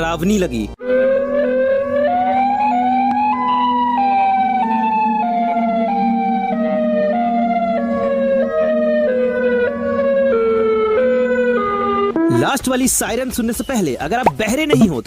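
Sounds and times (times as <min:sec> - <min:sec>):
electronic warning siren: 0:00.9 - 0:12.1.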